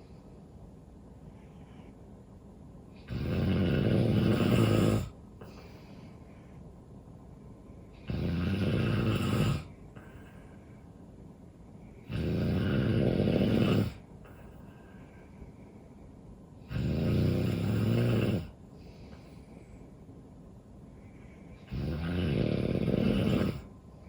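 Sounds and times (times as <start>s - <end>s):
person snoring: 3.0s - 5.2s, 8.0s - 10.3s, 12.0s - 14.6s, 16.6s - 18.6s, 21.6s - 23.7s.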